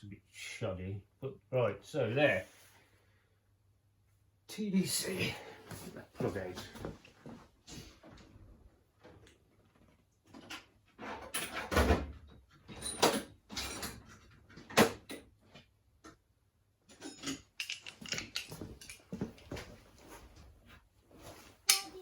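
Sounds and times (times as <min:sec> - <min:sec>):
tools and parts clattering: 0:10.3 - 0:15.4, 0:16.8 - 0:20.3.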